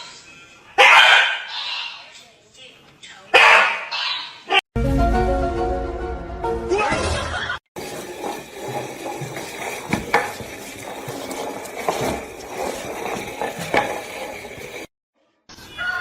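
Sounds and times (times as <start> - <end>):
steady rustling: 7.8 - 14.9.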